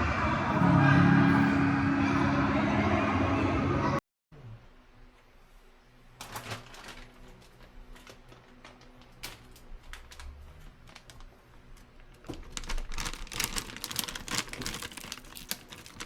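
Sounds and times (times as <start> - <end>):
crinkling and rustling: 6.1 - 16.0.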